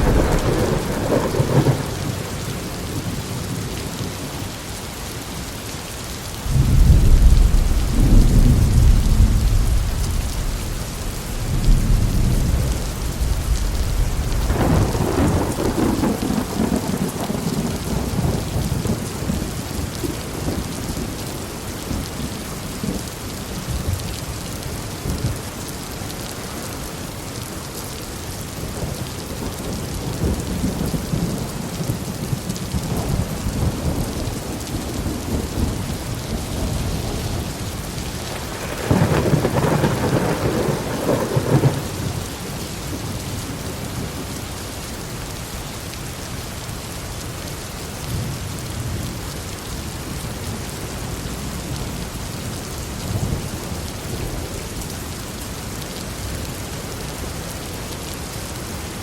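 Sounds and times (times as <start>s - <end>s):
sharp crack of thunder: 0.0s - 2.7s, 6.4s - 19.4s, 38.3s - 42.3s
rolling thunder: 0.0s - 3.3s, 6.4s - 21.2s, 28.8s - 44.3s
steady rain hiss: 0.0s - 59.0s.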